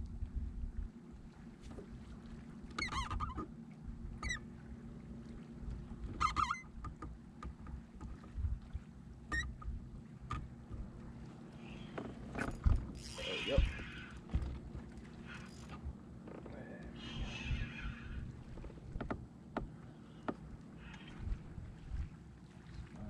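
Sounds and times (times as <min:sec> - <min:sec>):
low hum: 0:00.0 - 0:23.0
bird calling: 0:11.5 - 0:12.3, 0:13.0 - 0:14.3, 0:16.9 - 0:18.4, 0:19.8 - 0:21.4
kayak knocking on water: 0:12.0 - 0:15.0, 0:18.6 - 0:22.0.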